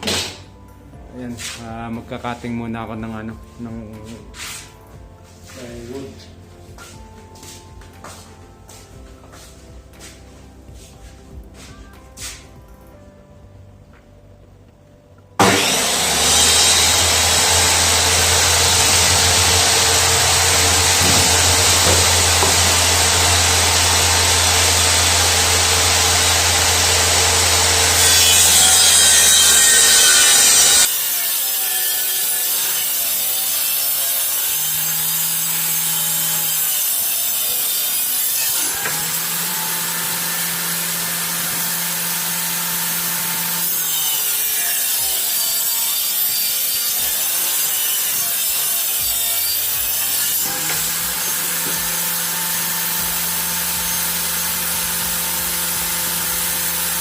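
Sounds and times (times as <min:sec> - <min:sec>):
motor hum: 0:15.4 - 0:28.2
wood being sawn: 0:15.4 - 0:57.0.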